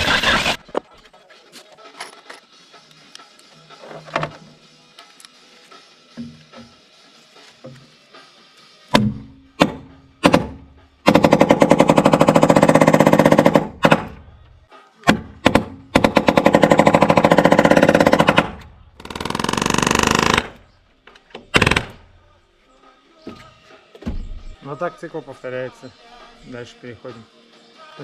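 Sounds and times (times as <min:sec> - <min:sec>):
power tool hammering: 0:08.9 - 0:14.2, 0:15.1 - 0:20.6.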